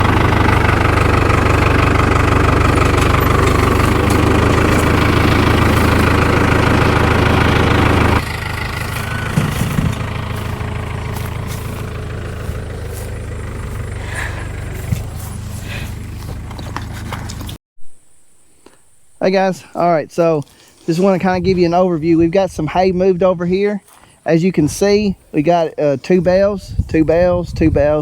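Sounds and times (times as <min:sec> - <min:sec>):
vehicle engine running: 0:00.0 - 0:17.6, 0:18.7 - 0:25.2.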